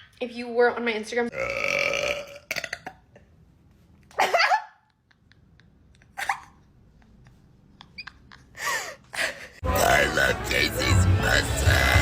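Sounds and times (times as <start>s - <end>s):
woman burping: 1.3s - 3.2s.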